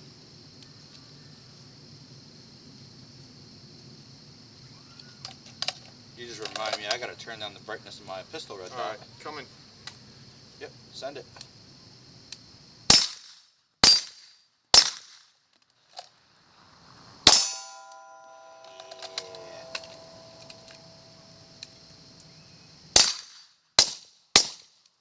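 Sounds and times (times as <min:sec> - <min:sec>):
pistol shots: 0:12.9 - 0:14.2, 0:14.8 - 0:15.2, 0:17.3 - 0:18.0, 0:23.0 - 0:24.6
steel target ringing: 0:17.3 - 0:21.6.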